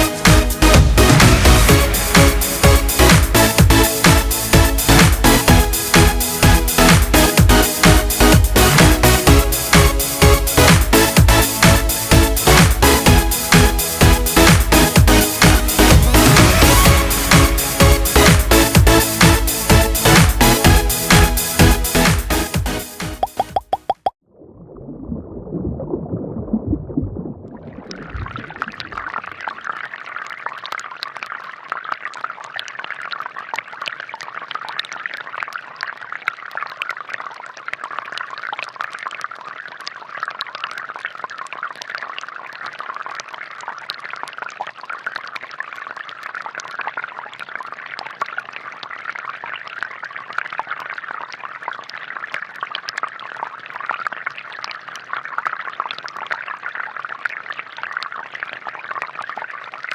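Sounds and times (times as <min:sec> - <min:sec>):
fountain water trickling into basin: 0:27.1 - 0:59.9.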